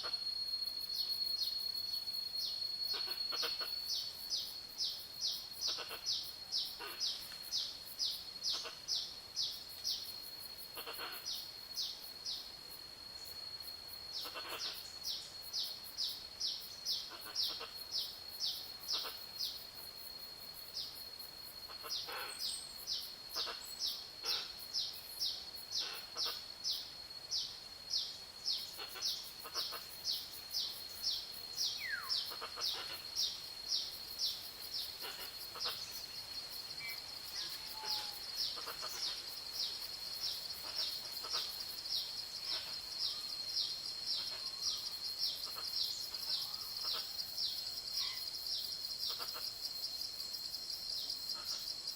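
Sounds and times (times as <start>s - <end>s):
fainter bird calls: 2.4s - 10.1s, 10.8s - 12.5s, 14.2s - 15.3s, 16.1s - 19.6s, 21.7s - 26.9s, 28.0s - 41.7s, 42.4s - 48.3s, 49.1s - 49.6s
bird repeating high call: 31.7s - 33.0s, 36.8s - 39.1s.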